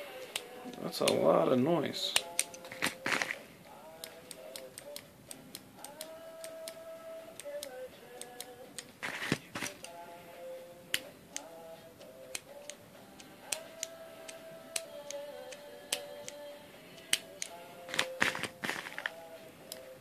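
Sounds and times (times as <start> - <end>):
soft music with held tones: 0.0 - 20.0
sharp clicks: 2.1 - 3.2, 4.0 - 6.8.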